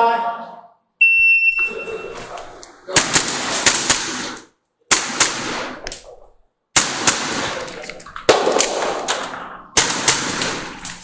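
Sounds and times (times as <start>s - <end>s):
airsoft pistol shots: 2.9s - 6.1s, 6.8s - 11.0s.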